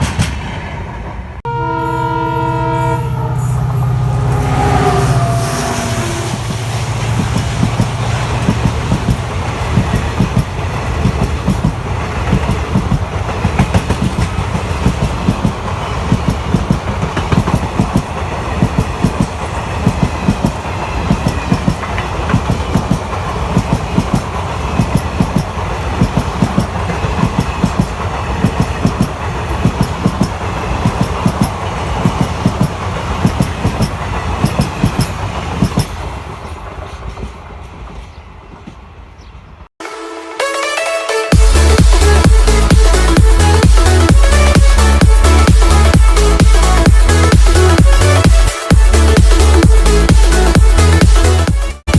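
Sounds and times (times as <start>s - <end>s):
train wheels clattering over rails: 0.0s - 1.1s, 6.3s - 39.6s.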